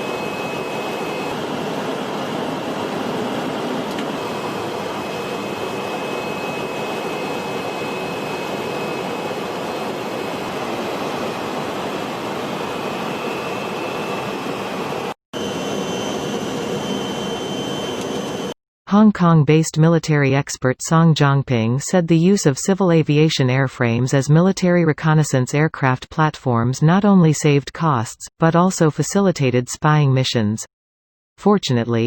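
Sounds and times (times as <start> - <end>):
jet engines rushing: 0.0 - 18.5
faint high whine: 0.0 - 18.6.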